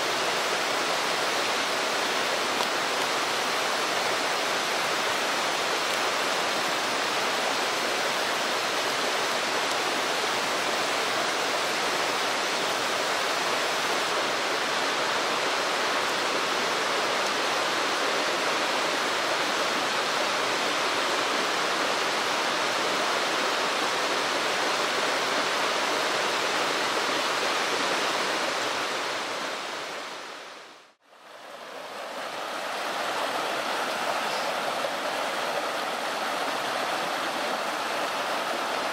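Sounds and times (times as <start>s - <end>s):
stream rushing over rocks: 0.0s - 38.9s.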